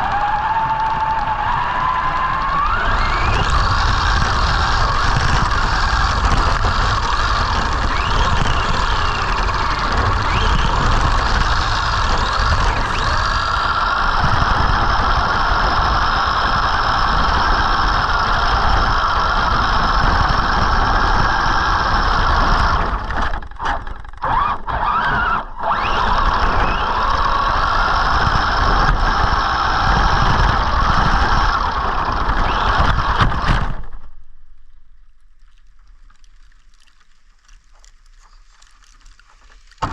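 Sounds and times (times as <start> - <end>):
electric motor whining: 0.0 - 34.1
low rumble: 1.7 - 23.6.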